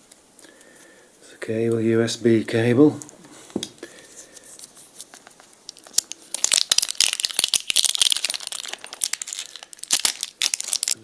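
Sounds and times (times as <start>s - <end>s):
plastic packaging crinkling and tearing: 4.5s - 11.0s.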